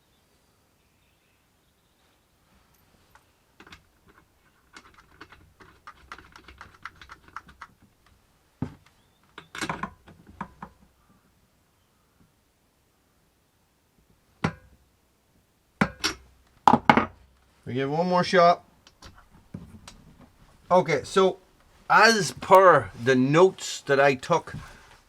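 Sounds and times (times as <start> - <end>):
small hard parts clicking: 3.1 - 8.2, 8.8 - 10.9.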